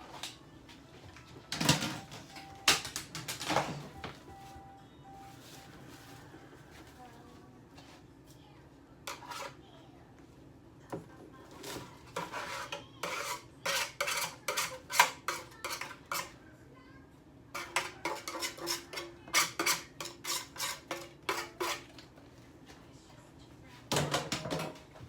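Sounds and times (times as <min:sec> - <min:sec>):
dishes clinking and clattering: 0:17.6 - 0:21.9, 0:23.9 - 0:25.0.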